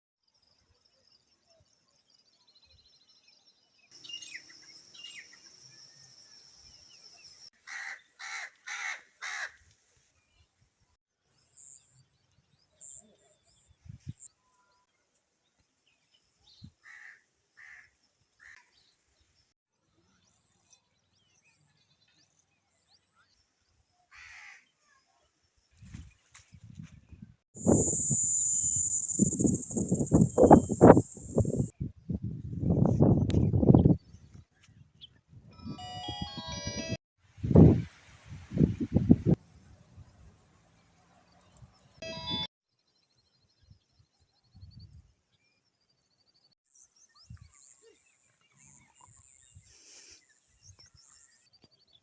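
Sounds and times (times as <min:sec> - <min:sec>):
high-pitched whine: 0:27.6 - 0:31.7.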